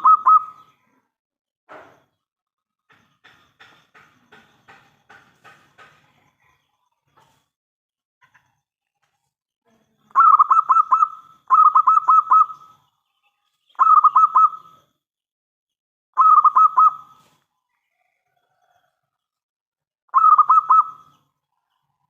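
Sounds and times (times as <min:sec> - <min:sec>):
dove cooing: 0:00.0 - 0:00.7, 0:10.2 - 0:12.7, 0:13.8 - 0:14.7, 0:16.2 - 0:17.2, 0:20.2 - 0:21.1.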